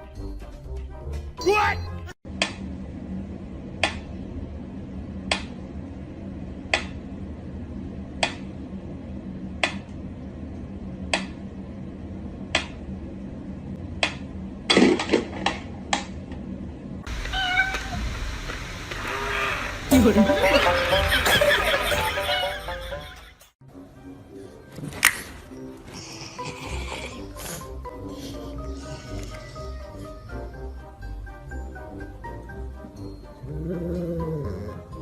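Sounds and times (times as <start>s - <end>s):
steady low hum: 2.3s - 23.3s
cat meowing: 17.2s - 18.0s.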